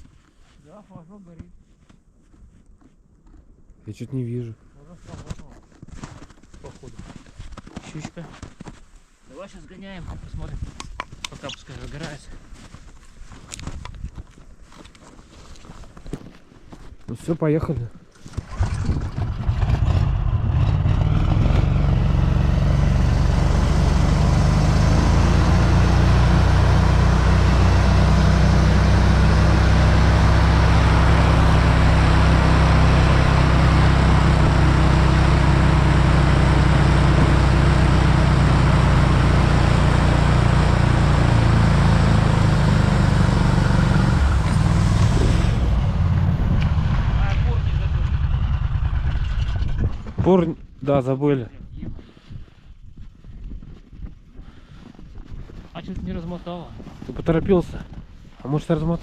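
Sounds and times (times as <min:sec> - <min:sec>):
snowmobile engine running: 0:18.3 - 0:49.9.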